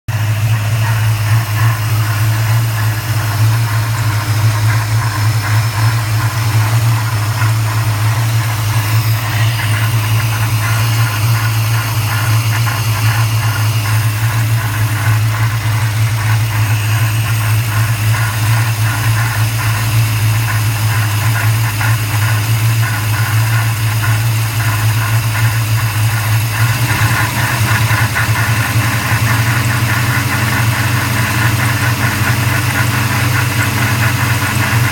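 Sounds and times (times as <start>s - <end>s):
car engine idling: 0.1s - 34.9s
fast ticking: 0.2s - 34.9s.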